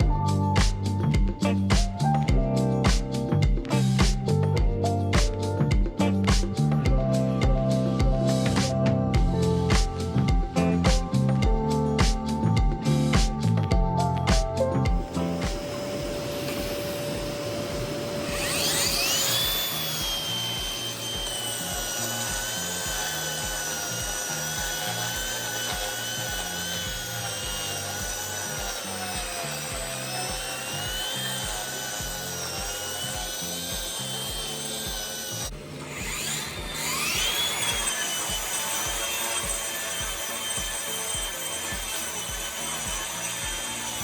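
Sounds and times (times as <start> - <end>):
concrete grinder motor whine: 14.9 - 44.0.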